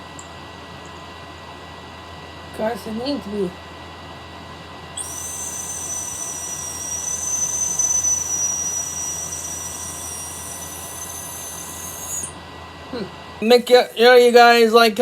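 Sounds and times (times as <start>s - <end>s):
dog whistle tone: 5.0s - 12.3s.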